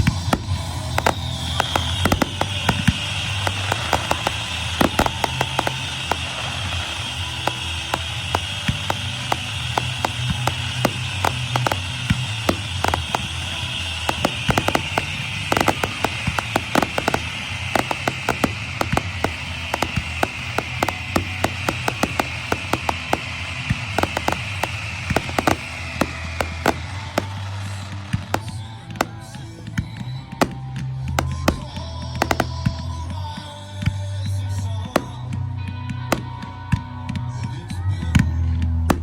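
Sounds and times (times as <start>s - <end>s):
fireworks bursting: 0.0s - 33.5s, 34.5s - 37.2s.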